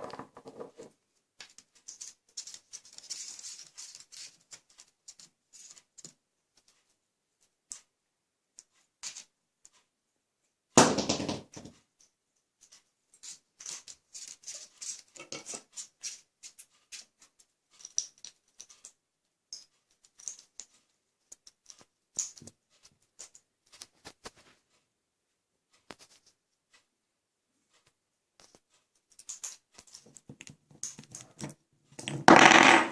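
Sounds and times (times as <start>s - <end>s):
toy clattering: 0.0s - 6.9s, 10.8s - 24.1s, 27.8s - 32.9s
parrot clicking and scratching toy: 0.0s - 7.9s, 8.6s - 9.8s, 11.4s - 24.6s, 25.8s - 26.9s, 27.8s - 32.6s.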